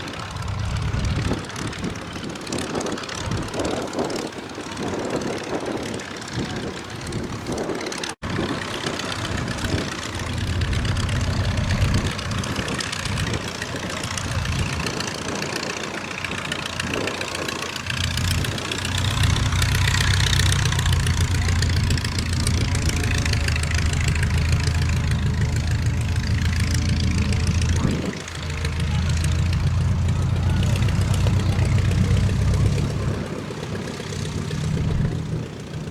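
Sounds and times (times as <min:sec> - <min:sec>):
propeller plane engine idling: 0:00.0 - 0:35.9
wind noise: 0:00.0 - 0:35.9.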